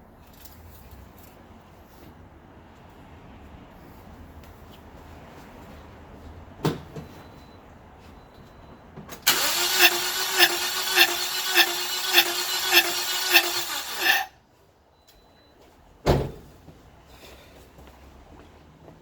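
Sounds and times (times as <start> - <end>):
engine starter cranking: 9.2 - 14.3.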